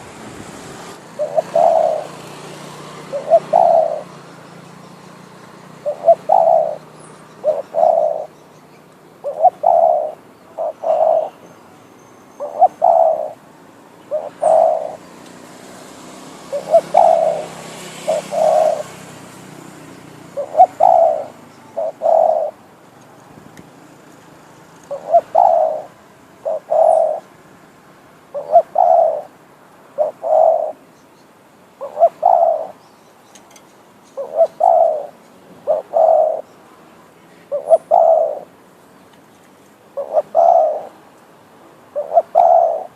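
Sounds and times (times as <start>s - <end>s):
dove cooing: 1.1s - 4.4s, 5.4s - 8.4s, 9.2s - 11.5s, 12.4s - 13.4s, 14.0s - 15.1s, 16.4s - 19.4s, 20.2s - 22.6s, 24.9s - 27.4s, 28.3s - 30.9s, 31.8s - 32.8s, 34.2s - 36.6s, 37.4s - 38.6s, 39.9s - 41.0s, 41.9s - 42.9s.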